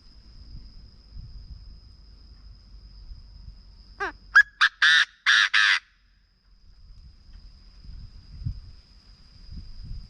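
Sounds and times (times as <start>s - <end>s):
low wind rumble on microphone: 0.0s - 4.3s, 6.5s - 10.0s.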